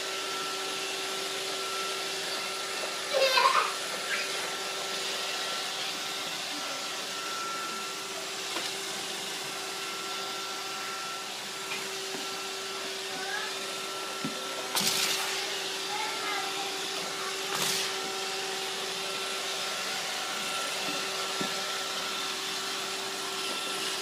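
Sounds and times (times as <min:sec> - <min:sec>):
robot vacuum whirring: 0:00.0 - 0:24.0.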